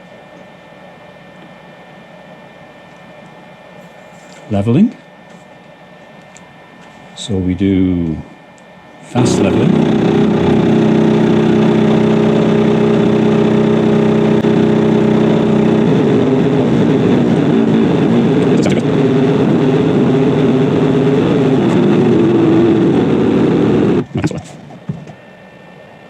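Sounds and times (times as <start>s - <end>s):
stepper motors buzzing: 9.1s - 24.1s.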